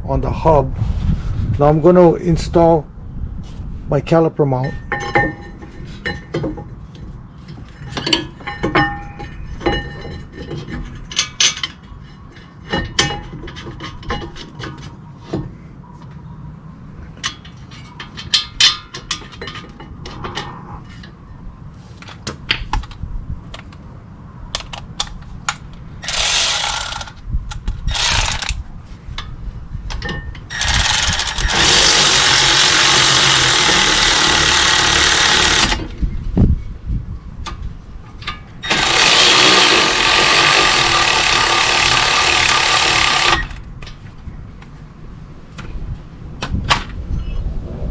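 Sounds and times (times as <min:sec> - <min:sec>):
power tool driving bolts: 0:26.0 - 0:28.6, 0:30.5 - 0:36.0, 0:38.6 - 0:43.6
metal parts clinking: 0:30.0 - 0:35.9.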